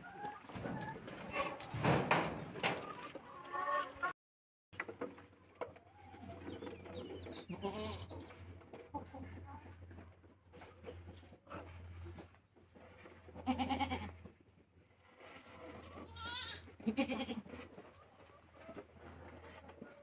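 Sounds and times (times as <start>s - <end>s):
chickens clucking: 0.0s - 4.1s, 5.4s - 12.2s, 17.4s - 20.0s.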